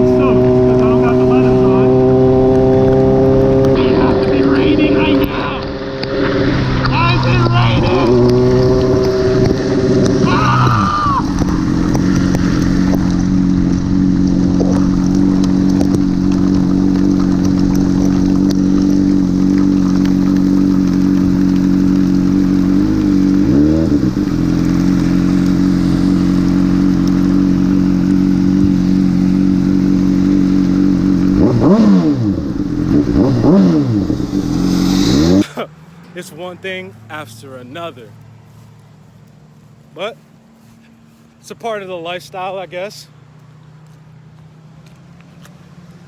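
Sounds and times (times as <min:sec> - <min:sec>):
motorcycle engine running: 0:00.0 - 0:36.2.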